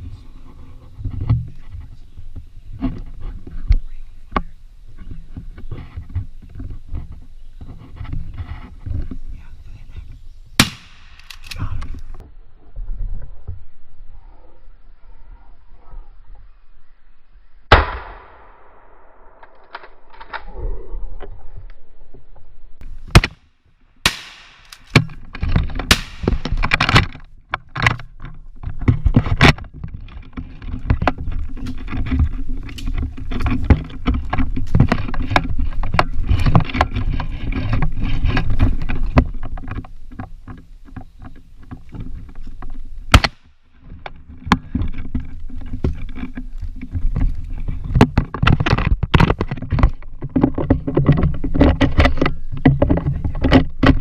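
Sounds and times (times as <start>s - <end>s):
steady low rumbling: 8.7s - 23.2s
shotgun blasts: 10.6s - 11.6s, 17.7s - 19.6s, 24.0s - 24.8s, 25.9s - 26.4s, 43.1s - 43.4s.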